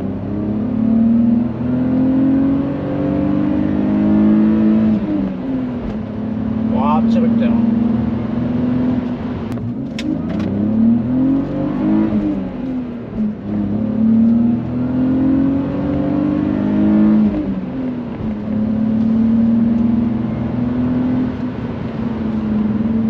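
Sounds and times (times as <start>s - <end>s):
car engine accelerating: 0.0s - 23.0s.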